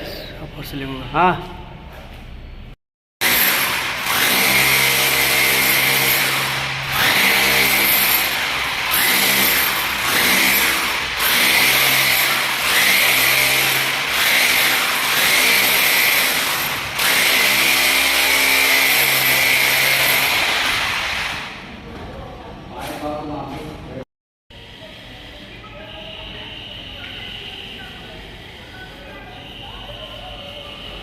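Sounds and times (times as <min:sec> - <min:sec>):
power tool running: 0:03.2 - 0:21.7.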